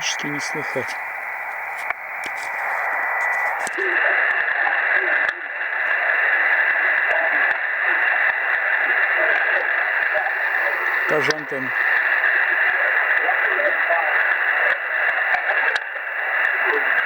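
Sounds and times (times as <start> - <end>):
radio clicks: 0.0 - 6.1
radio static hiss: 0.0 - 17.0.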